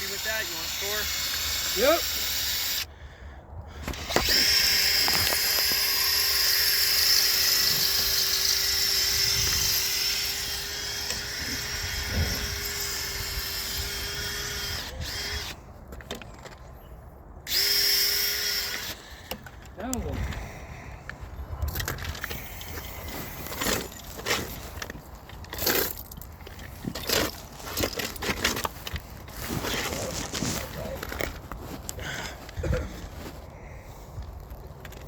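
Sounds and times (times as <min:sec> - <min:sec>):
power drill boring into concrete: 0:00.0 - 0:02.9, 0:03.8 - 0:15.6, 0:17.5 - 0:19.2.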